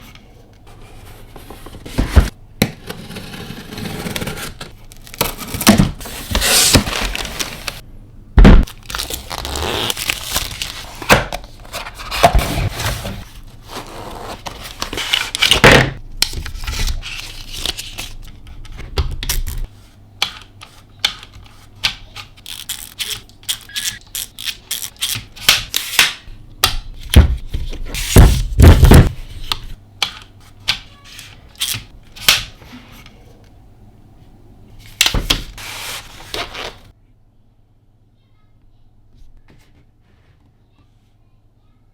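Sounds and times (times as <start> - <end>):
loud thunks: 8.4 - 8.7
packaging tearing and crinkling: 8.7 - 11.2.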